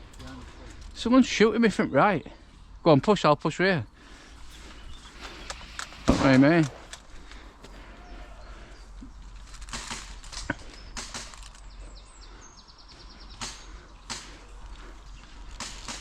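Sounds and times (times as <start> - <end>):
airsoft guns firing: 5.2 - 7.2, 9.7 - 11.6, 13.3 - 14.6, 15.5 - 16.0.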